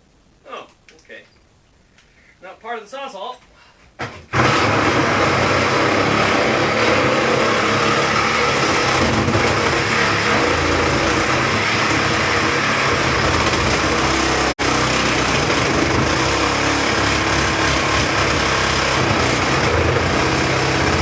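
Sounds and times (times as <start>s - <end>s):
reciprocating saw cutting metal: 4.4s - 21.0s.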